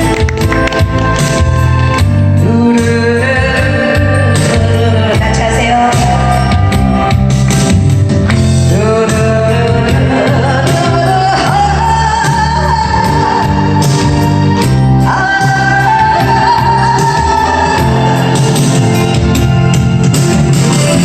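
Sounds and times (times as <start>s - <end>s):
instrumental accompaniment with bass: 0.0s - 21.0s
woman singing a slow ballad: 2.2s - 7.2s, 8.6s - 18.6s.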